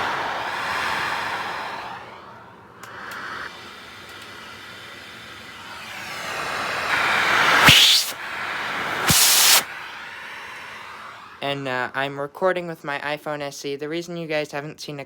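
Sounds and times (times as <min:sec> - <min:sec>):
vacuum hose sucking air: 0:02.8 - 0:09.9.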